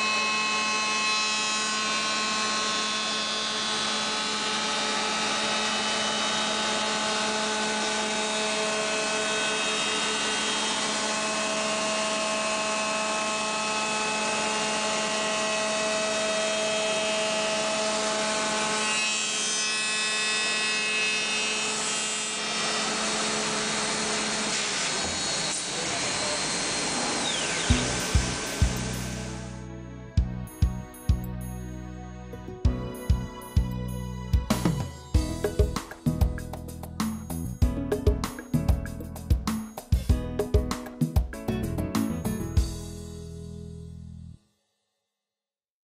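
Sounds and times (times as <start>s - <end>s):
wood router motors whining: 0.0s - 29.8s
rough machine noise: 22.4s - 29.7s.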